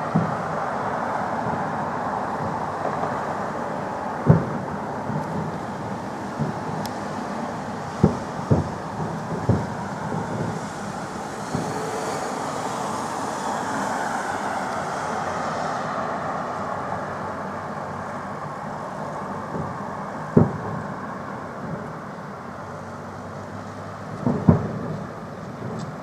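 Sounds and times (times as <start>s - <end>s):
city traffic rumble: 0.0s - 26.0s
fireworks bangs: 0.0s - 26.0s
high hiss: 5.9s - 18.0s.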